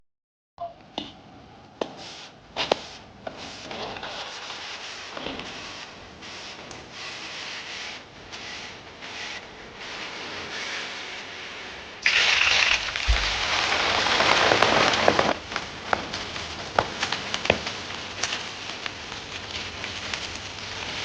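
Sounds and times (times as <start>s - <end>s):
rubbing and scraping: 2.0s - 11.0s, 12.1s - 15.4s.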